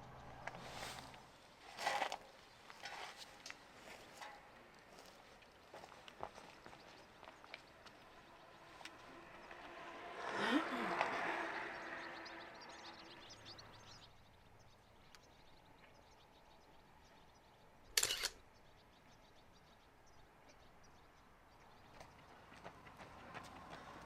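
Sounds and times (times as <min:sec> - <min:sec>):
camera shutter double click: 0:18.0 - 0:18.4.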